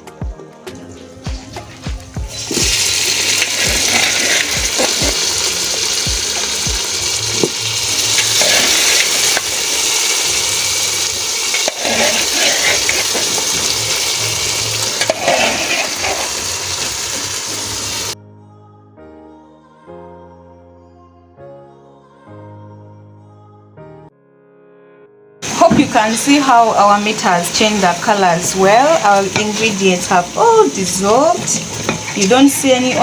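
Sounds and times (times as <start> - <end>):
soft background music: 0.0 - 33.0
meat and onions sizzling in a pan: 2.2 - 18.2, 25.4 - 33.0.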